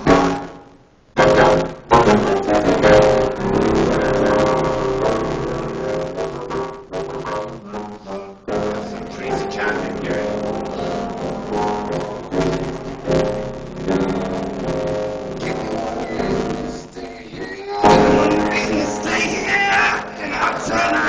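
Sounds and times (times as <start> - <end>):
live piano music: 1.2 - 21.0.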